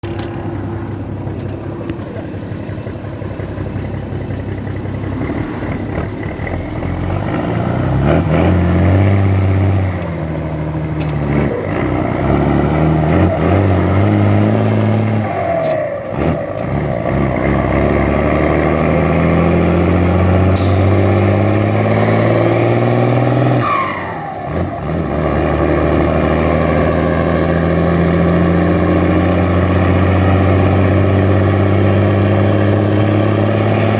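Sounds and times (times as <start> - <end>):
diesel truck engine revving: 0.0 - 33.9.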